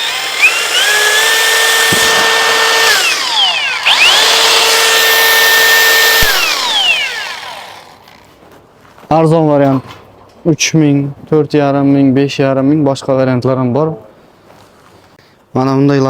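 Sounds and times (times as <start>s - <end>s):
mixer motor whine: 0.0s - 8.2s.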